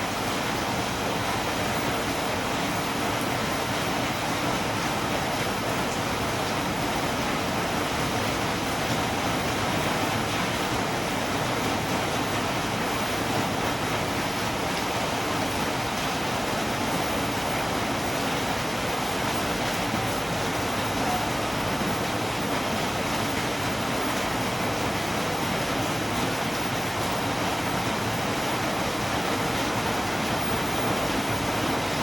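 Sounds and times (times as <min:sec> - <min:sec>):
steady rain hiss: 0:00.0 - 0:32.0.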